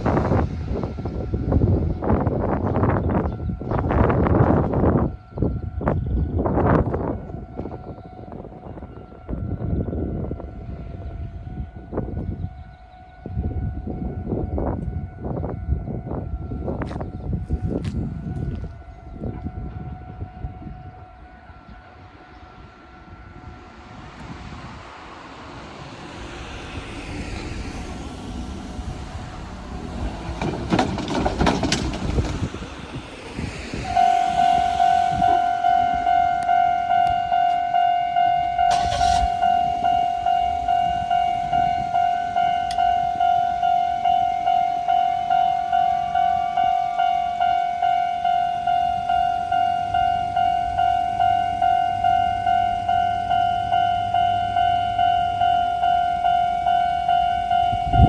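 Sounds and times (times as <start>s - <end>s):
rumble with knocks: 26.3s - 33.9s
level-crossing warning bell: 26.3s - 58.0s.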